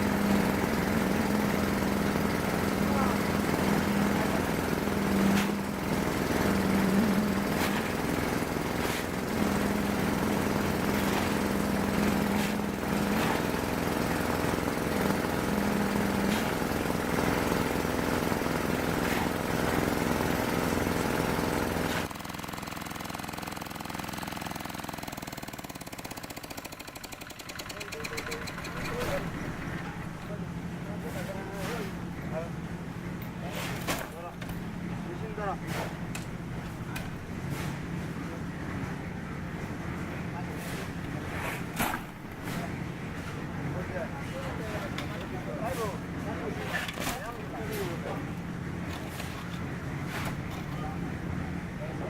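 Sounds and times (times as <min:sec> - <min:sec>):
small engine chugging: 0:00.0 - 0:31.0.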